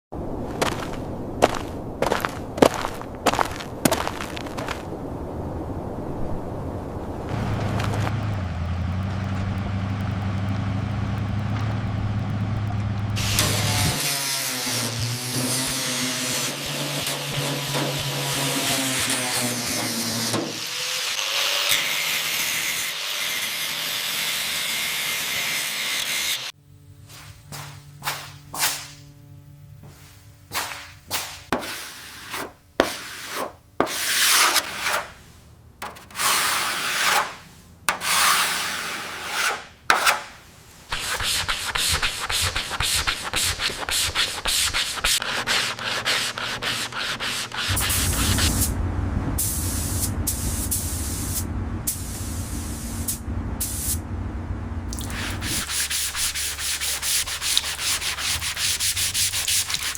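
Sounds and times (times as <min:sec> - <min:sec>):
sanding car bodywork: 0:13.2 - 0:20.9, 0:31.5 - 0:48.6, 0:55.1 - 0:59.9.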